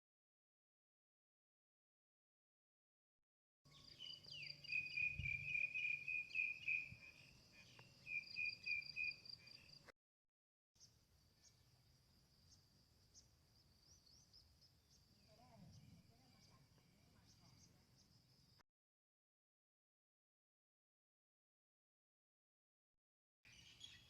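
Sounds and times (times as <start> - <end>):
insects chirping: 3.7 - 9.8, 10.8 - 18.6.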